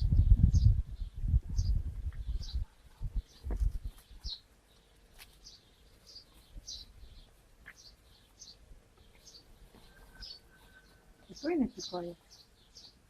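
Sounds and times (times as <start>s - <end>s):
dull low thumps: 0.0s - 4.0s
bird chirping: 0.0s - 13.0s.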